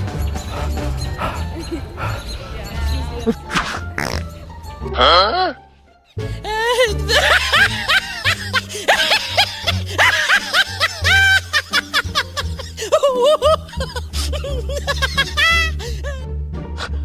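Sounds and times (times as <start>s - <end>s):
upbeat comedy music: 0.0s - 17.0s
snickering laughter: 1.2s - 2.3s, 6.5s - 16.2s.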